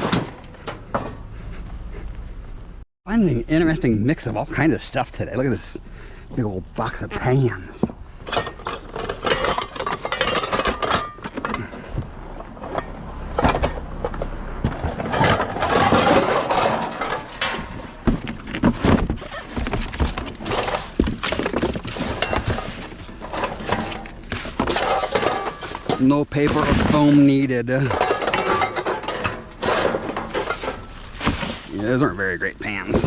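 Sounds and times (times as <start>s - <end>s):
metal pots and pans clanking: 8.2s - 12.0s, 14.9s - 18.1s, 20.4s - 31.6s.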